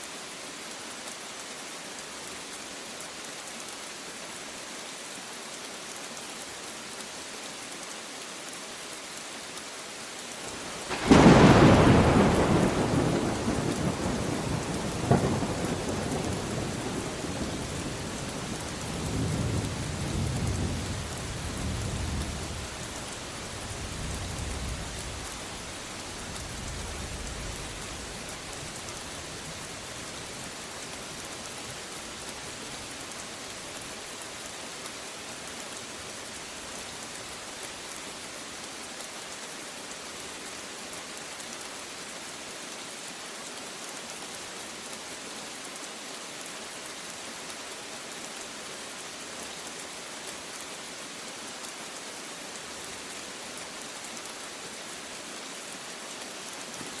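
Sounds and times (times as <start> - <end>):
steady rain falling: 0.0 - 57.0
low rumble of thunder: 10.8 - 25.3.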